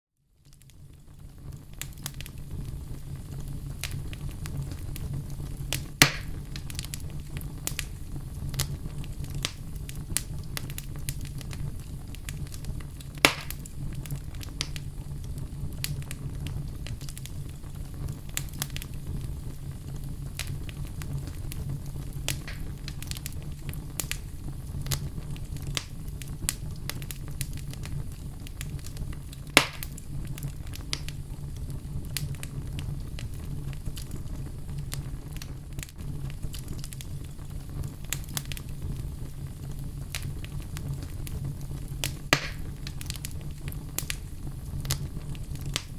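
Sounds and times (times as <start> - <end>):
fire burning in fireplace: 0.2 - 45.9
fire crackles and pops: 0.2 - 45.9.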